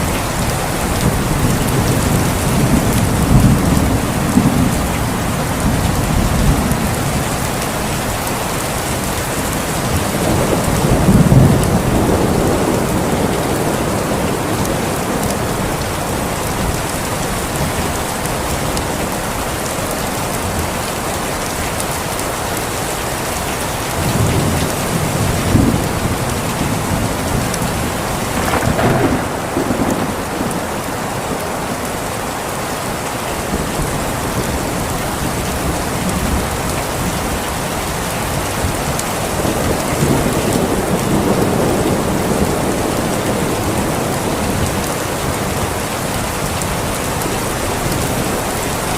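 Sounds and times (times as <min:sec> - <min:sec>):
heavy rain falling: 0:00.0 - 0:48.9
low rolls of thunder: 0:09.9 - 0:18.3, 0:24.0 - 0:31.9, 0:39.4 - 0:45.1.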